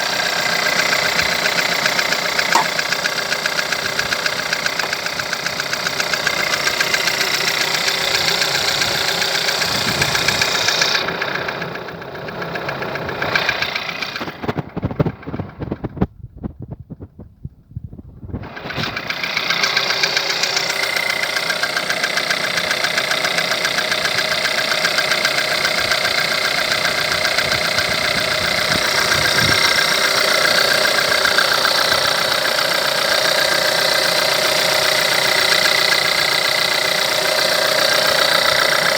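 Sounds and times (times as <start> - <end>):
car engine idling: 0.0 - 16.1, 18.3 - 38.9
engine knocking: 0.0 - 38.9
uneven engine thumps: 1.3 - 5.9.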